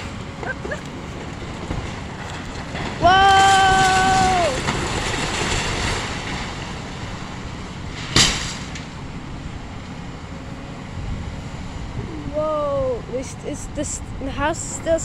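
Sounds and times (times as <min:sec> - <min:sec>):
walls and debris crashing: 0:00.0 - 0:09.1
sharp crack: 0:07.9 - 0:09.1.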